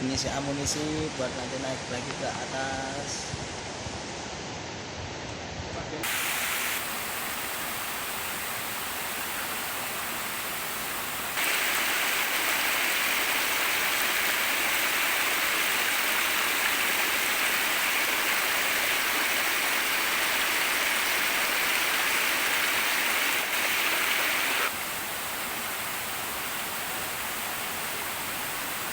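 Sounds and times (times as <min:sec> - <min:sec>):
waterfall rushing water: 0:06.0 - 0:28.9.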